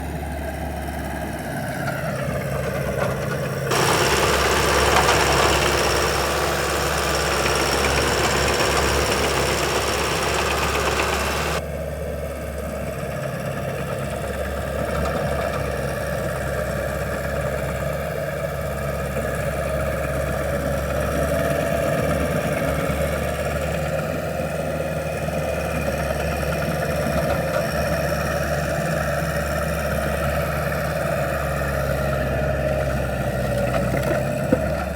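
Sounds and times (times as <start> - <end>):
skid steer engine running: 0.0 - 34.9
loud hiss: 3.7 - 11.6.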